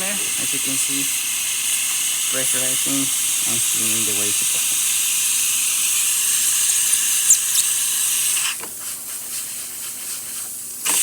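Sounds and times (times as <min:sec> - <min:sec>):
steam wand hissing: 0:00.0 - 0:08.6.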